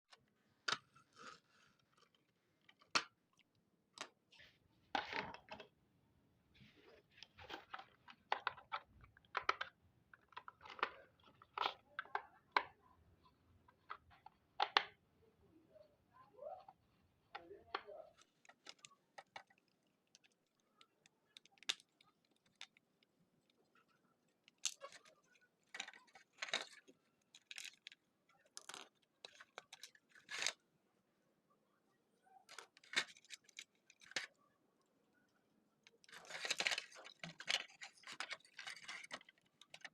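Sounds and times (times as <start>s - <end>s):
packaging crinkling and rustling: 36.0s - 39.9s.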